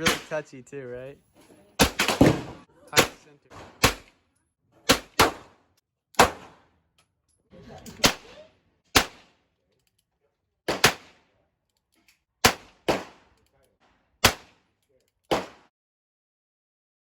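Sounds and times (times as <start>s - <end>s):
gunshots: 0.0s - 0.5s, 1.8s - 4.1s, 4.9s - 5.6s, 6.2s - 6.7s, 7.9s - 9.4s, 10.7s - 11.2s, 12.4s - 13.2s, 14.2s - 14.6s, 15.3s - 15.7s.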